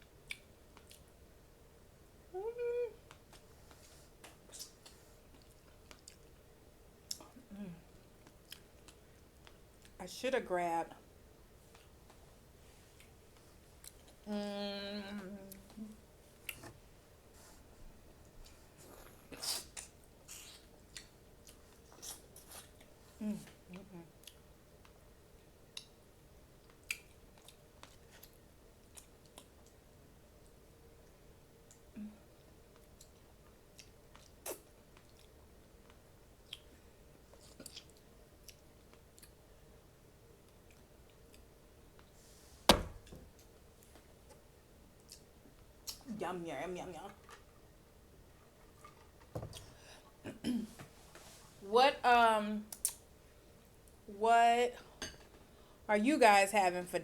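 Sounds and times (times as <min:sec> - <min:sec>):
faint chewing and mouth sounds: 0:00.0 - 0:01.3, 0:02.9 - 0:10.0, 0:11.5 - 0:14.4, 0:15.0 - 0:42.4, 0:43.3 - 0:46.2, 0:47.0 - 0:51.6, 0:52.7 - 0:54.0
person humming: 0:02.3 - 0:03.0, 0:07.4 - 0:07.8, 0:14.2 - 0:16.0.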